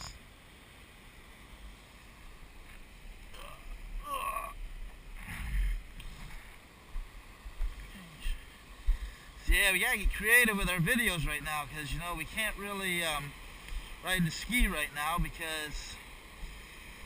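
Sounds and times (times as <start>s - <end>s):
large surf washing: 7.4s - 17.0s.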